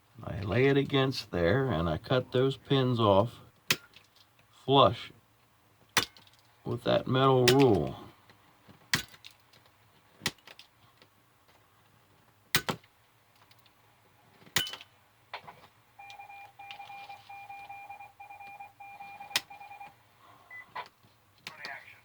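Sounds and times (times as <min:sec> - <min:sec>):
steady high beep tone: 0:16.0 - 0:19.9.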